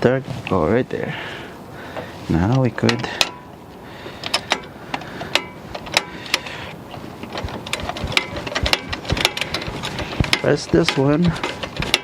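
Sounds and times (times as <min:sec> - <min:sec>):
metallic clicks of hand tools: 0:02.5 - 0:03.4, 0:04.2 - 0:06.5, 0:07.2 - 0:12.0.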